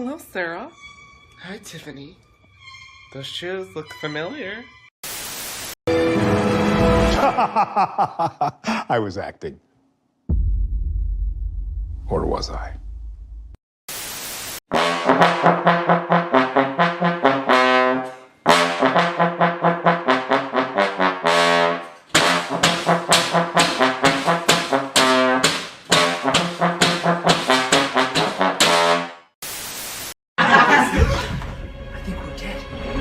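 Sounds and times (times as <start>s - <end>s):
brass music quick short notes: 14.7s - 29.2s.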